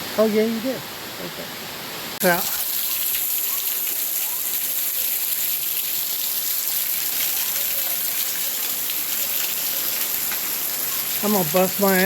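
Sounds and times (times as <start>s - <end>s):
waterfall rushing: 7.0s - 12.0s.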